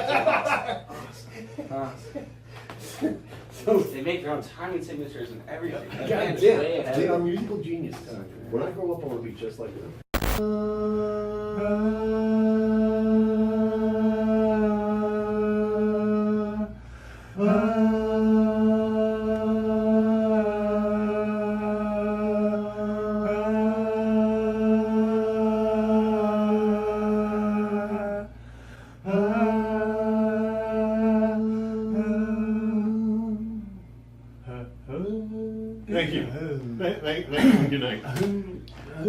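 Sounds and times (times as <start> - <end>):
short breaths: 16.8 - 17.4, 28.4 - 29.0.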